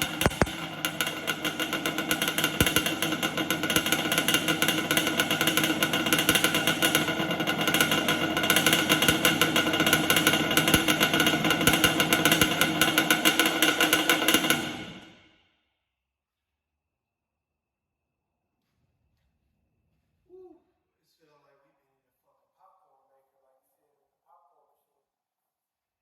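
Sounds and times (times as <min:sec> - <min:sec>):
two-stroke engine running: 0:00.0 - 0:15.1.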